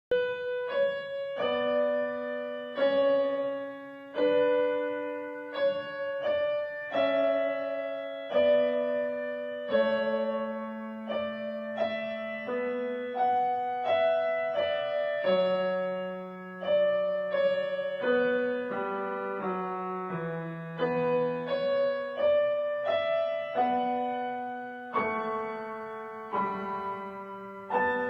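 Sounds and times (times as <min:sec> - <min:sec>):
slow solo piano melody: 0:00.1 - 0:28.0.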